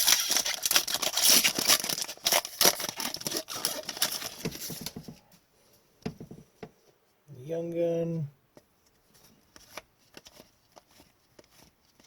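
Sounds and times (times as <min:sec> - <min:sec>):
foil wrapper crinkling and tearing: 0:00.0 - 0:04.7.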